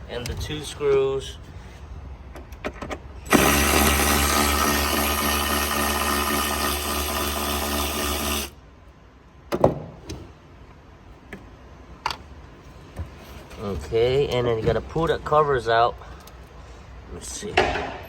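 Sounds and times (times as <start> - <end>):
cordless power drill running: 3.3 - 8.6.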